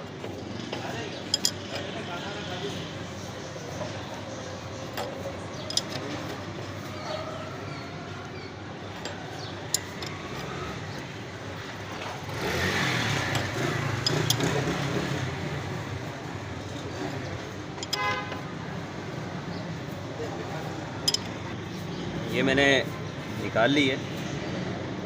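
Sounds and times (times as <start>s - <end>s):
road traffic going by: 0.0s - 25.0s
sharp metal clicks: 0.2s - 2.0s, 4.8s - 6.4s, 8.9s - 11.2s, 12.0s - 15.2s, 17.7s - 18.4s, 21.0s - 21.6s
vehicle horn toot: 17.9s - 18.5s.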